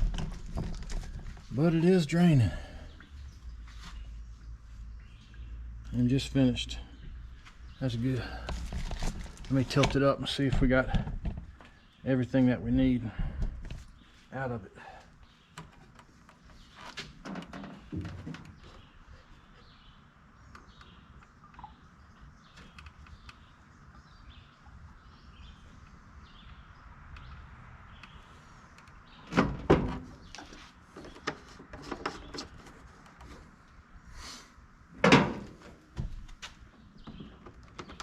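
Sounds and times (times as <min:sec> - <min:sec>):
push mower knocks and clunks: 0:35.0 - 0:36.2.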